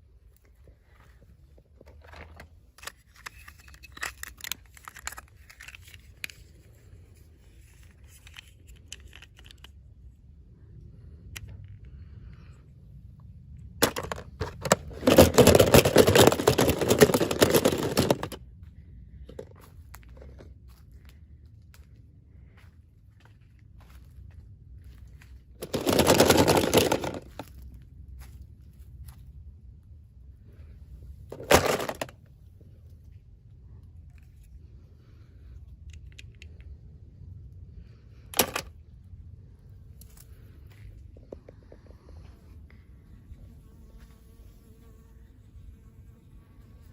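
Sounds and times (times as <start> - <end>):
packaging crinkling and tearing: 25.6 - 27.4
faint small clicks: 35.6 - 36.8.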